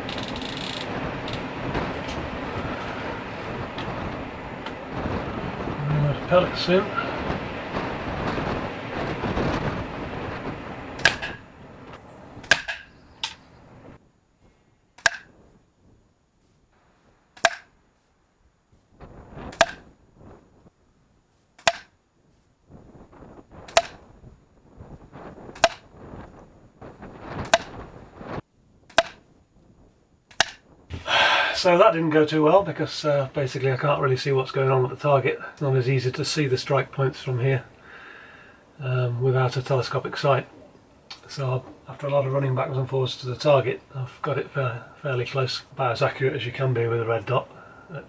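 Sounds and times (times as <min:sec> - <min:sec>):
rushing noise: 0:00.0 - 0:14.0, 0:30.9 - 0:48.0
air rifle shots: 0:11.0 - 0:11.5.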